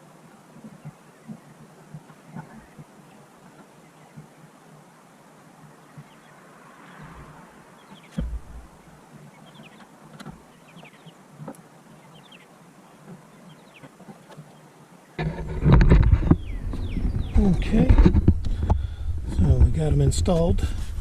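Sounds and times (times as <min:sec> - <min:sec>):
small birds chirping: 0:00.0 - 0:15.2, 0:16.0 - 0:19.0
loud knock: 0:08.2 - 0:08.7.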